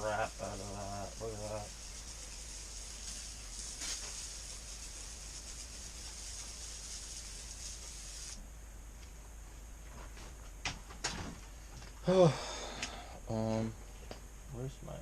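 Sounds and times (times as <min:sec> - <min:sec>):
aerosol can spraying: 0:00.0 - 0:08.4.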